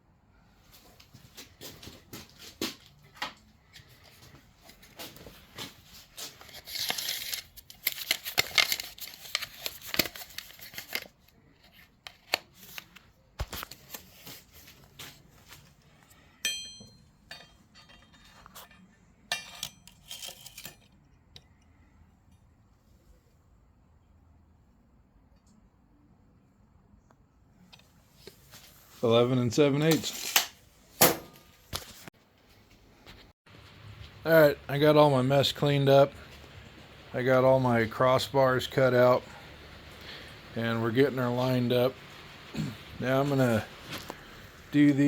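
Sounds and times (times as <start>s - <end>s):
ringing metal clink: 16.4s - 20.1s.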